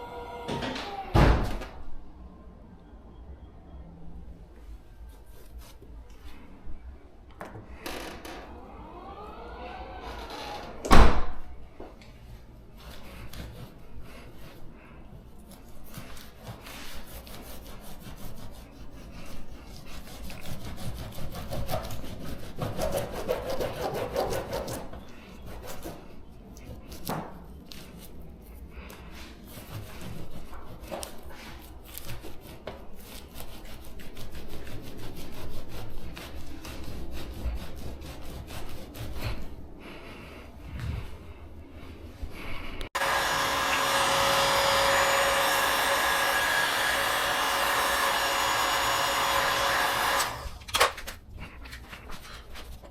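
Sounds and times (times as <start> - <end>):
hand scraper scraping paint: 15.3 - 39.6.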